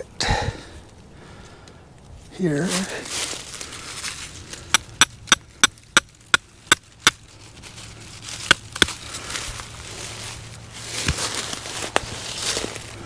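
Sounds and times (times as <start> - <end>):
hammer striking tent stake: 4.7 - 7.2.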